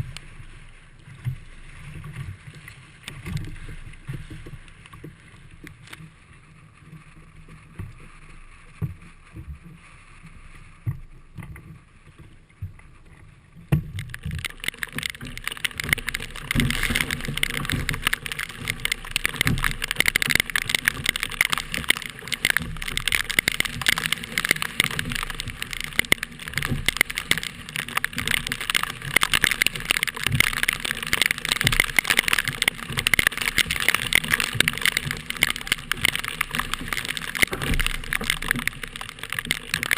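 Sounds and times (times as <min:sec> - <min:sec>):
rush of water and wind: 0:00.0 - 0:39.9.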